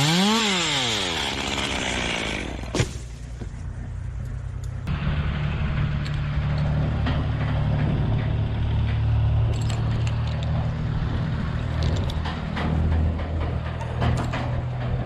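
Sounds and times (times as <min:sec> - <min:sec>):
engine running steadily: 0:00.0 - 0:15.0
clicks and knocks: 0:11.8 - 0:15.0.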